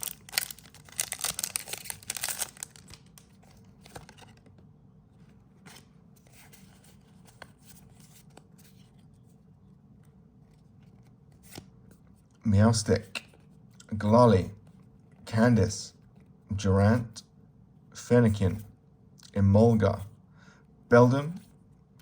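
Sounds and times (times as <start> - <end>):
foil wrapper tearing and crinkling: 0.0 - 3.2
cards rustling and tapping: 0.0 - 4.7.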